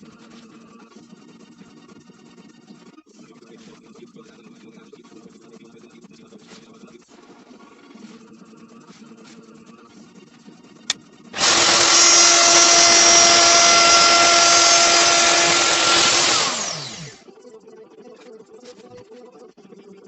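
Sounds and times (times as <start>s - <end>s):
electric power tool whining: 11.4s - 17.2s.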